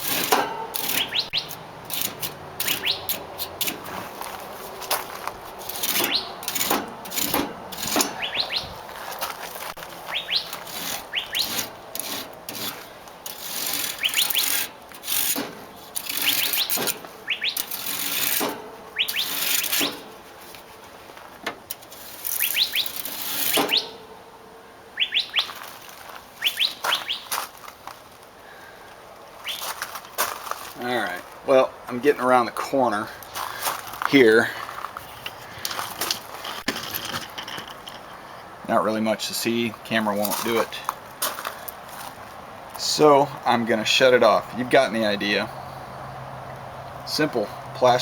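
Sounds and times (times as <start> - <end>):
comb rasping through metal fins: 0.0 - 8.5, 9.5 - 21.0, 21.6 - 24.2.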